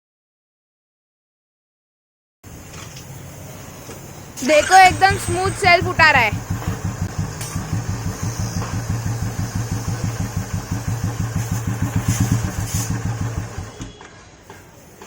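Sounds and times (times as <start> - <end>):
motorcycle engine idling: 4.5 - 13.8.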